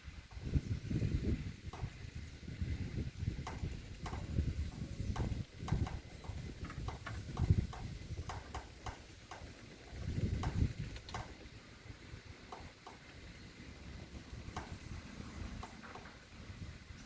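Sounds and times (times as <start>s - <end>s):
wind buffeting microphone: 0.0s - 17.0s
light ticks and taps: 3.4s - 9.6s, 10.4s - 11.4s, 12.5s - 13.2s, 14.5s - 14.9s.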